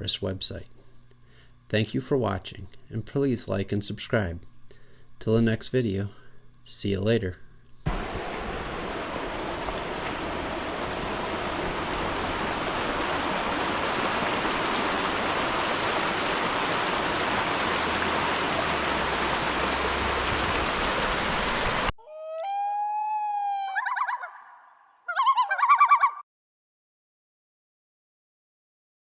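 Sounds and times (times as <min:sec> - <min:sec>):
flowing water rushing: 0:07.9 - 0:21.9
loon wailing and tremolo calls: 0:22.0 - 0:26.2.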